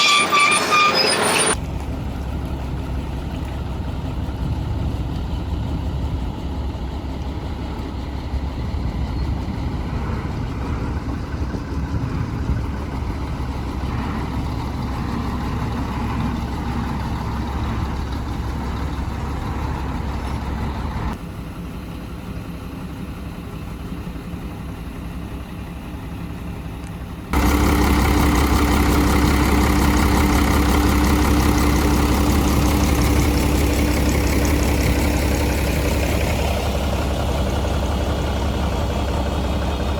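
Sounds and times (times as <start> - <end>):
heavy diesel engine running: 0.0 - 39.9.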